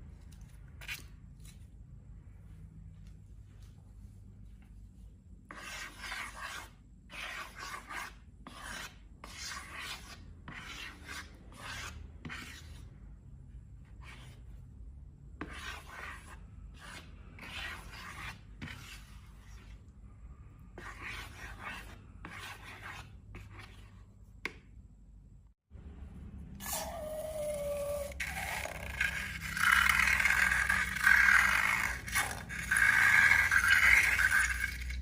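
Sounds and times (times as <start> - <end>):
dry scraping strokes: 5.5 - 13.0, 15.4 - 19.9, 20.8 - 24.0, 26.6 - 35.0.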